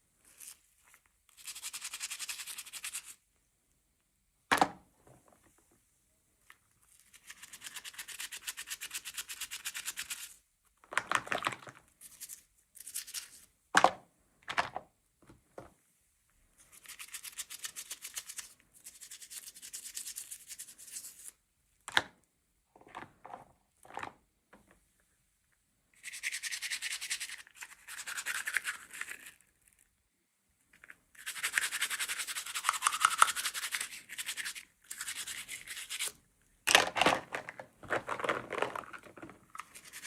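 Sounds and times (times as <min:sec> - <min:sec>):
scratching and rubbing on packaging: 0:31.2 - 0:36.2, 0:39.6 - 0:40.0.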